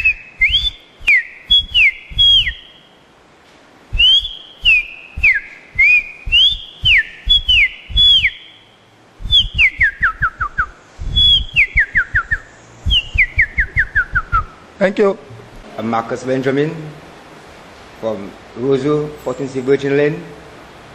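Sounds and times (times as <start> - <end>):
person whistling bird song: 0.0 - 2.9, 3.9 - 14.6.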